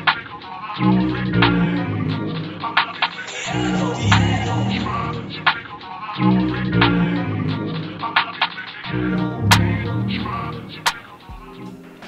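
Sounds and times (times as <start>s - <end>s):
electronic hip hop beat: 0.0s - 12.0s
bass line: 0.8s - 2.6s, 3.4s - 5.6s, 6.2s - 8.0s, 8.9s - 11.8s.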